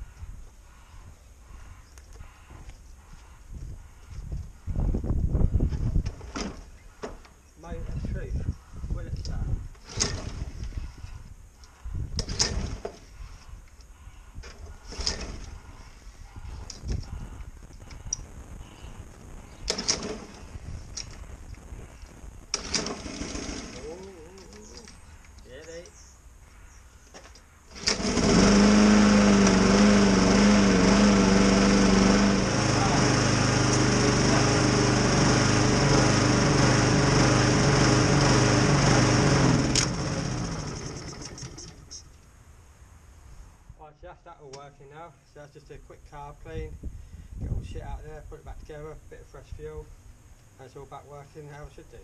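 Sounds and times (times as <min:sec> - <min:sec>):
engine turning over: 0:09.8 - 0:10.6, 0:12.2 - 0:13.0, 0:14.8 - 0:15.5, 0:19.7 - 0:21.1, 0:22.5 - 0:24.9, 0:27.7 - 0:42.1
lawnmower recoil starter pulls: 0:09.8 - 0:10.8, 0:12.2 - 0:13.0, 0:14.5 - 0:15.5, 0:19.7 - 0:21.2, 0:22.5 - 0:25.0, 0:27.7 - 0:42.1.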